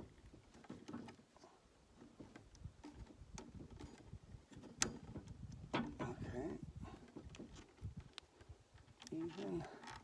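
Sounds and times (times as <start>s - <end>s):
trimmer line rustling and clicking: 7.1s - 10.0s.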